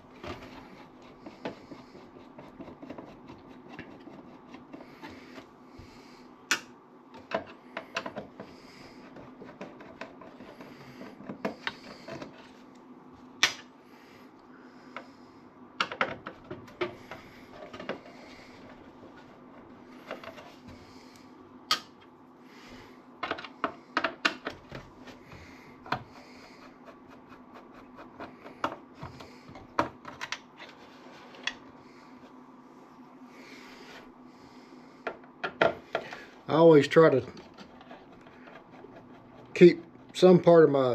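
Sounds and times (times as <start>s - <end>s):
faint steady hum: 0.0s - 40.9s.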